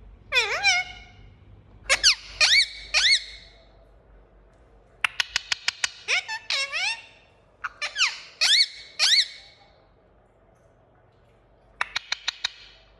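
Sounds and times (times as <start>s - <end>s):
parakeet squawking: 0.3s - 1.3s, 1.9s - 3.6s, 5.1s - 9.6s.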